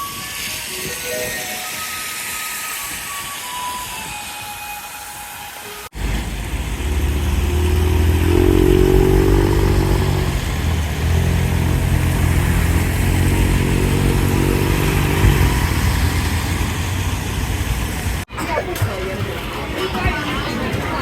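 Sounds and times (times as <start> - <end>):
rain hissing: 0.0 - 18.3
motorbike engines passing: 5.9 - 18.3.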